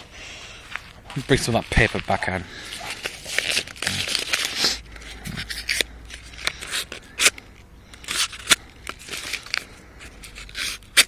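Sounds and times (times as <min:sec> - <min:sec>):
paper rustling: 0:00.7 - 0:11.0
knife blade cutting paper: 0:08.0 - 0:11.0.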